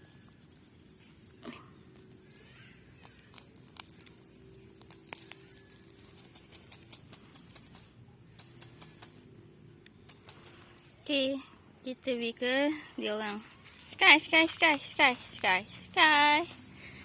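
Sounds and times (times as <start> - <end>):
plant stems snapping: 1.9 - 9.2.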